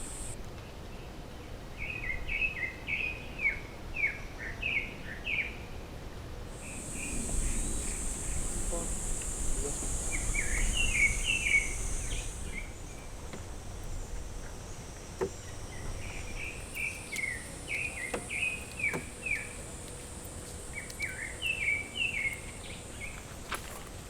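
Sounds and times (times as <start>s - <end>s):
bird chirping: 0.0s - 0.4s, 6.6s - 19.8s
high insect buzz: 0.0s - 0.4s, 6.5s - 24.0s.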